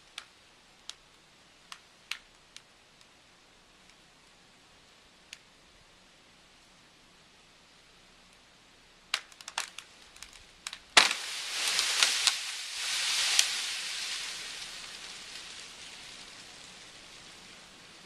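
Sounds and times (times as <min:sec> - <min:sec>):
tree limb cracking and snapping: 0:09.1 - 0:17.0
branches and snow crashing down: 0:09.2 - 0:18.0.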